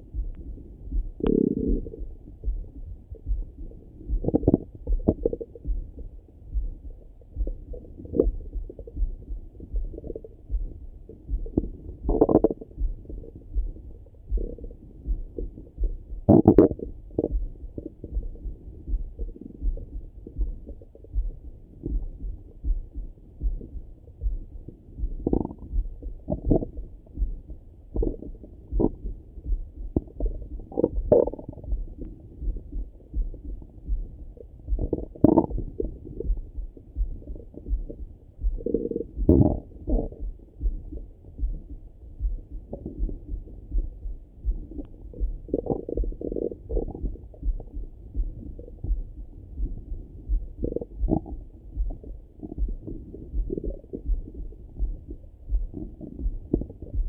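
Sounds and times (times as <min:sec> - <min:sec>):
low thumping: 0:00.0 - 0:57.0
stomach gurgles through stethoscope: 0:01.2 - 0:02.1, 0:04.1 - 0:05.7, 0:11.5 - 0:12.8, 0:16.2 - 0:18.3, 0:25.2 - 0:26.8, 0:28.0 - 0:29.1, 0:30.0 - 0:32.2, 0:34.7 - 0:36.4, 0:38.6 - 0:40.3, 0:44.7 - 0:48.9, 0:49.6 - 0:57.0.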